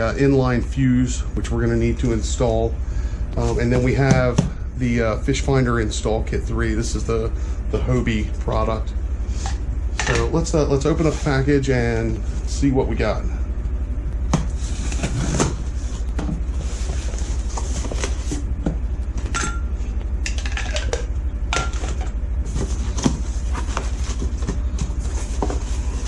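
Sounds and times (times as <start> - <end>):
low hum: 0.0 - 26.0
packaging rustling and crinkling: 22.4 - 26.0.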